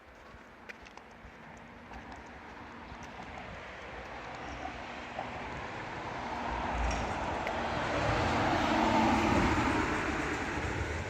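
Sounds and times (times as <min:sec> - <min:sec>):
vehicle passing by: 0:04.9 - 0:11.0.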